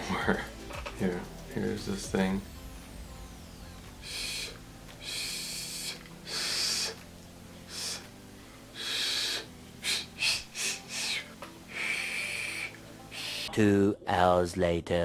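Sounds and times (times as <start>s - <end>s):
breathy blows through bird whistle: 3.9s - 7.0s, 7.7s - 8.1s, 8.8s - 13.5s.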